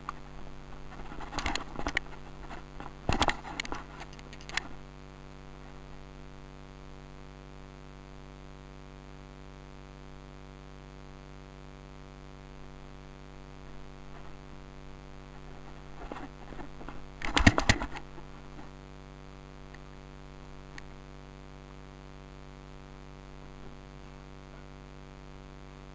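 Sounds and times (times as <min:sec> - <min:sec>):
sharp clicks and rustling: 0:00.0 - 0:04.8, 0:15.3 - 0:18.7
low hum and hiss: 0:00.0 - 0:25.9.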